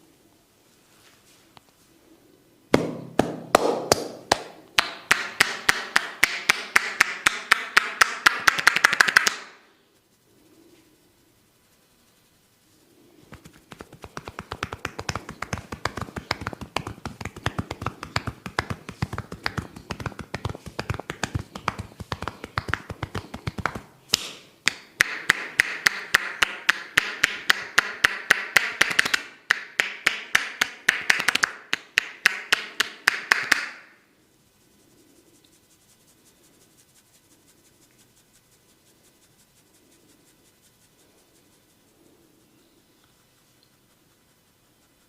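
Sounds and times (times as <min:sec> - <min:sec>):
hands tapping on head: 0:02.7 - 0:09.6, 0:13.3 - 0:34.0.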